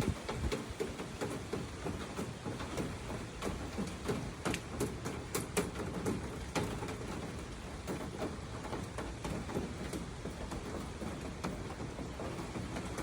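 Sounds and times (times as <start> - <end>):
heavy raindrops tapping: 0.0 - 13.0
rain falling: 0.0 - 13.0.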